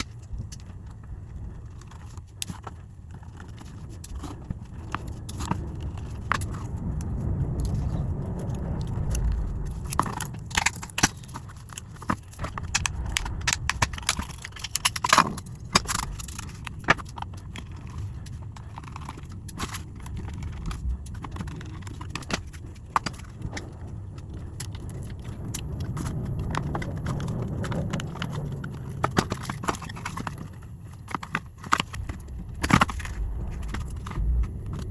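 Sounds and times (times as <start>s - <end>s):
low uneven rumble: 0.0s - 34.9s.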